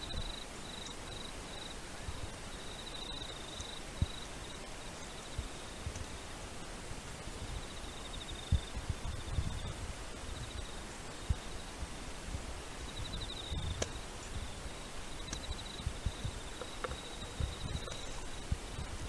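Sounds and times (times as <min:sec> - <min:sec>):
insect trilling: 0:12.9 - 0:19.0.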